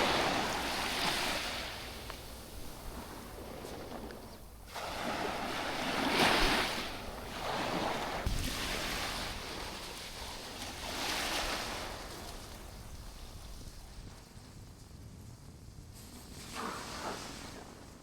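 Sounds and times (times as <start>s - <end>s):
waves breaking on sandy beach: 0.0s - 13.8s.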